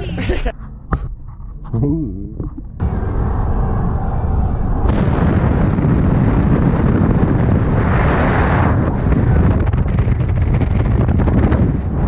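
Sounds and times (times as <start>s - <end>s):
loud low rumble: 1.8s - 12.0s
wind buffeting microphone: 2.5s - 12.0s.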